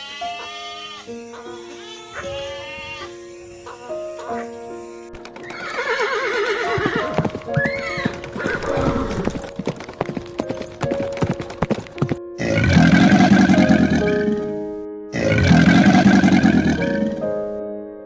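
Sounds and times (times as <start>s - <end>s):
horse whinnying: 0.0s - 9.5s
hooves clip-clopping: 0.0s - 12.3s
background music: 0.0s - 18.0s.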